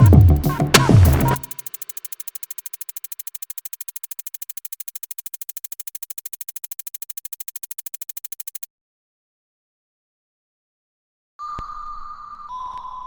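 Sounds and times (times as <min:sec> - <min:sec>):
fast synth pulse: 0:00.0 - 0:08.7.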